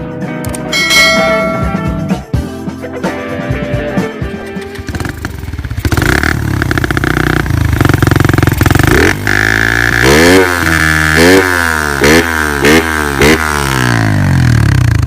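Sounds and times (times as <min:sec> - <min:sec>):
motorcycle engine revving: 0:04.3 - 0:15.0.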